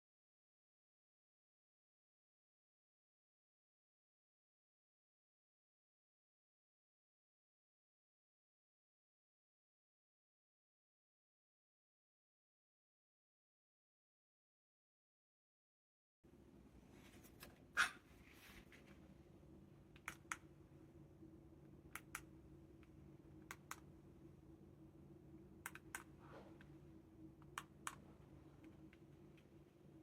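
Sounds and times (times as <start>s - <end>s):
low steady hum: 16.3s - 30.0s
faint sharp clicks: 19.9s - 20.5s, 25.6s - 26.7s.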